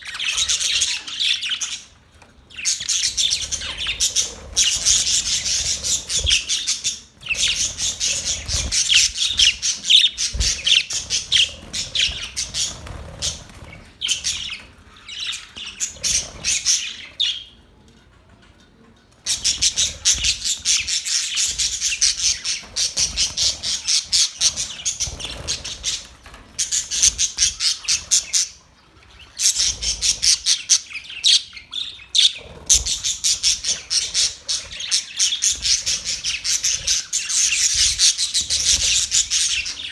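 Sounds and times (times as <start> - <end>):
budgerigars chirping and squawking: 0.0 - 17.6, 19.2 - 39.9.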